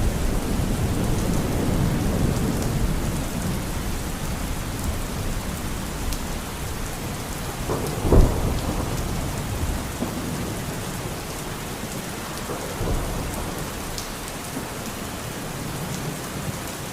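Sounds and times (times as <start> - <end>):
rumble of thunder: 0.0 - 11.3, 12.4 - 14.0
heavy rain: 0.0 - 16.9
loud thunder crack: 7.6 - 10.5.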